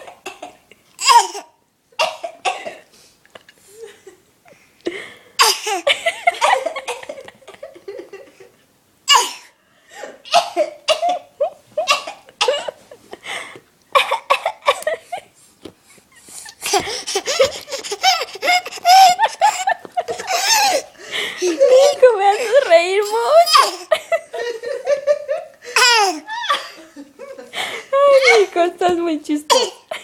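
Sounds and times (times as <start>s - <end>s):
baby coughing: 0.0s - 2.9s, 5.4s - 5.9s, 9.1s - 9.6s, 10.3s - 12.8s, 13.9s - 14.8s, 20.3s - 20.9s, 21.8s - 23.9s, 25.8s - 26.3s, 29.5s - 29.9s
woman laughing: 16.4s - 28.8s.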